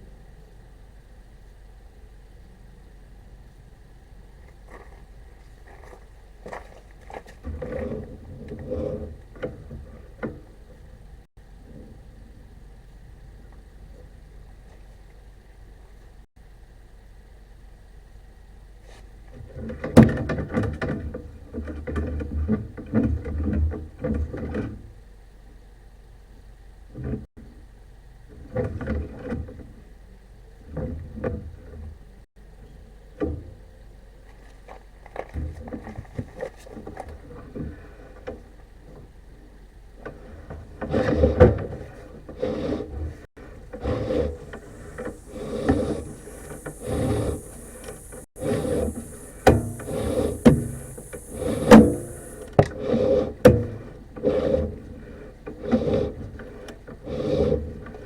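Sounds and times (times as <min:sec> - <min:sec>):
hiss: 0:43.9 - 0:52.5.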